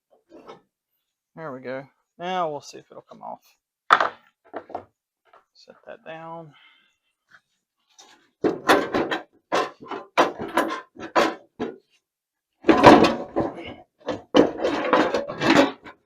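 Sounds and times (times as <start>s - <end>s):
sheet metal clanking and rattling: 8.4s - 11.7s, 12.7s - 16.0s.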